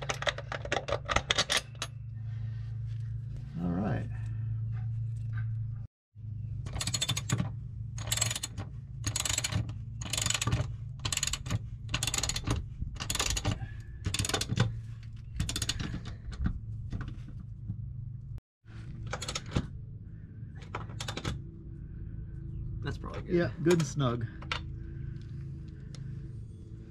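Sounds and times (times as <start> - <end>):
steady low hum: 0.0 - 26.9
ratchet wrench clicking: 8.0 - 14.6.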